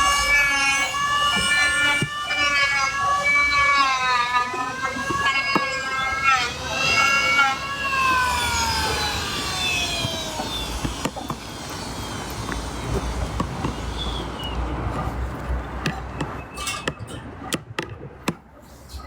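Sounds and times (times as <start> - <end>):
siren wailing: 0.0 - 14.4
street rumble: 0.0 - 19.0
sharp knocks and clicks: 15.8 - 18.4.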